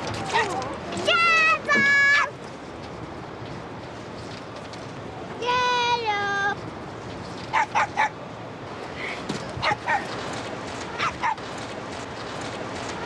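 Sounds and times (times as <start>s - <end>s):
small dog yapping: 7.5s - 8.2s, 9.6s - 10.1s, 11.0s - 11.4s.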